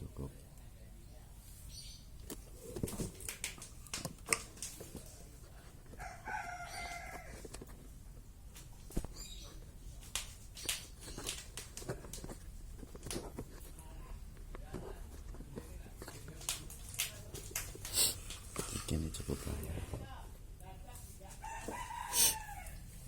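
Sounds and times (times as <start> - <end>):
rooster crowing: 6.0 - 7.5, 21.4 - 22.9.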